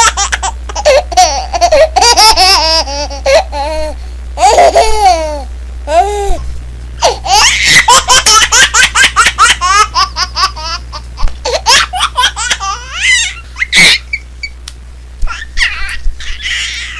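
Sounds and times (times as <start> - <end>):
baby laughing: 0.0 - 6.4, 7.0 - 14.5, 15.2 - 16.9.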